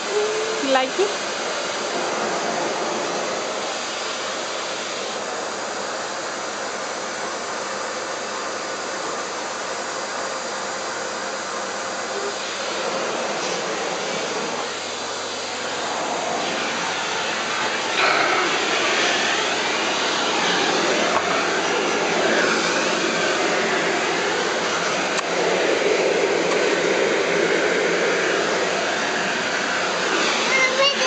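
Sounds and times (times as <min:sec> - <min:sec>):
vacuum cleaner running: 0:00.0 - 0:31.0.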